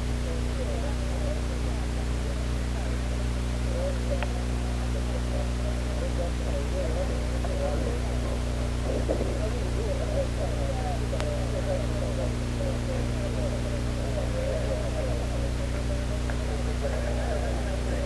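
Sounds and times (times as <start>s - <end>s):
faint wavering murmur: 0.0s - 18.0s
low electrical hum: 0.0s - 18.0s
faint click: 4.2s - 4.4s.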